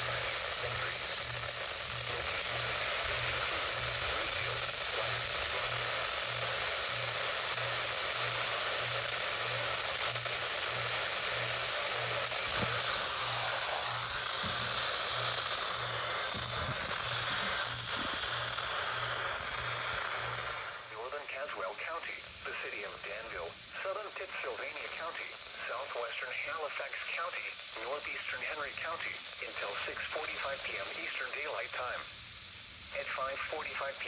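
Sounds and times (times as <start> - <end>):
low pulsing buzz: 0.0 - 20.5
radio static hiss: 0.0 - 34.0.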